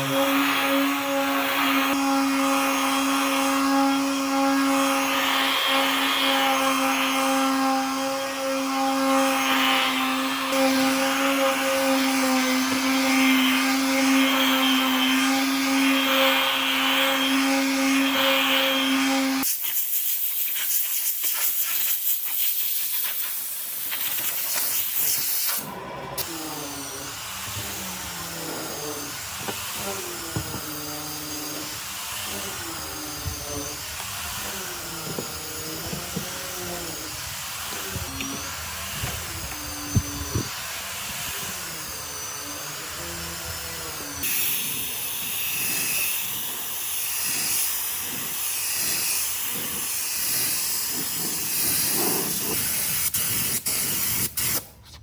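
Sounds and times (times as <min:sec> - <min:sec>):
steady hissing: 0:00.0 - 0:54.7
gliding whistle-like tones: 0:25.1 - 0:52.9.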